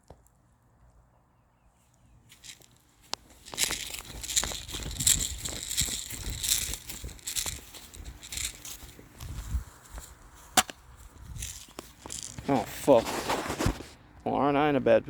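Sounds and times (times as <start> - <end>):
twigs crackling: 1.8 - 13.8
footsteps crunching through dry leaves: 2.1 - 13.9
gear rubbing: 2.4 - 13.8.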